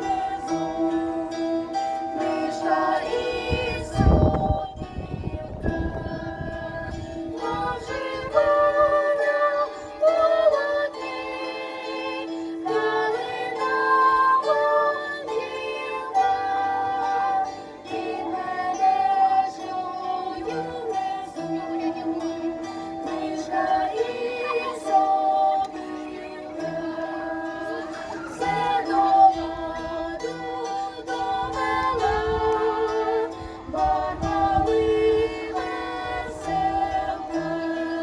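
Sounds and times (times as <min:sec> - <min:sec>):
children singing: 0:00.0 - 0:38.0
plucked strings: 0:00.0 - 0:38.0.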